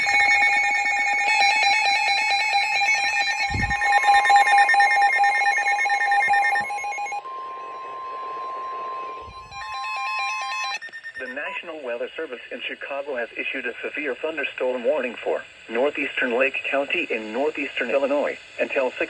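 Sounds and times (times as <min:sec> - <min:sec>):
rapid electronic beeping: 0:00.0 - 0:11.8
steady warning alarm tone: 0:00.0 - 0:11.9.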